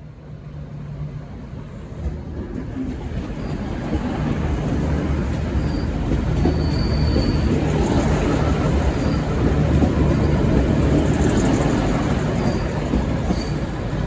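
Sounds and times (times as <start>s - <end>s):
train engine and rail rumble: 0.0s - 14.0s
faint high wheel squeals: 5.5s - 9.4s.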